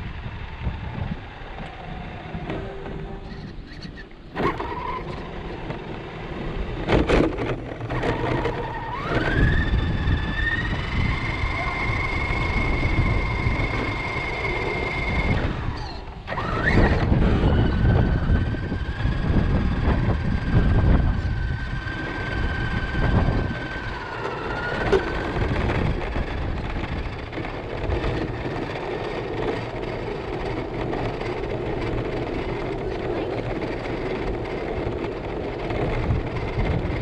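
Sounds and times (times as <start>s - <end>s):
small tyres rumbling on pavement: 0.0s - 37.0s
remote-control car motor whine: 7.8s - 37.0s.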